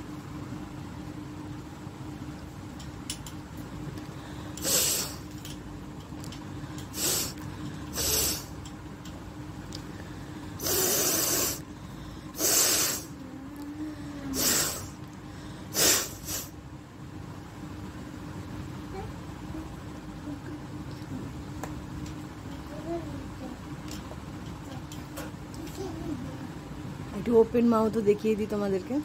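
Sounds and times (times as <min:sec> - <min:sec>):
woman snorting through nose: 0:04.6 - 0:05.2, 0:06.9 - 0:08.5, 0:10.6 - 0:11.6, 0:12.3 - 0:13.2, 0:14.2 - 0:15.0, 0:15.7 - 0:16.5.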